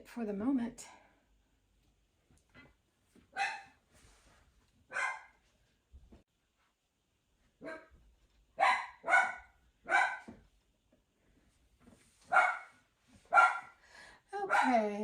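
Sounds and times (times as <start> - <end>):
dog barking: 3.3 - 3.8, 4.9 - 5.4, 7.6 - 7.9, 8.6 - 10.4, 12.3 - 13.8, 14.5 - 14.8.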